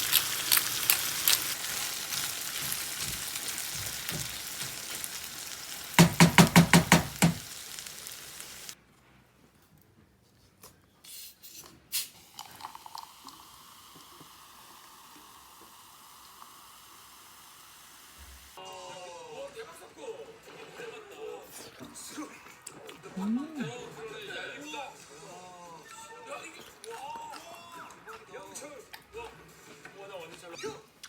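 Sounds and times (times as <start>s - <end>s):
food sizzling in a pan: 0.0s - 8.8s, 11.9s - 19.6s
loud knocks: 6.0s - 7.4s.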